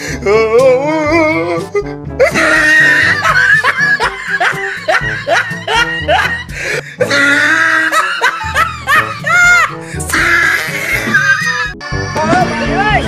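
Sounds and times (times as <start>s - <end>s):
background music with steady beat: 0.0s - 13.0s
laughter: 2.3s - 6.5s, 7.1s - 9.7s.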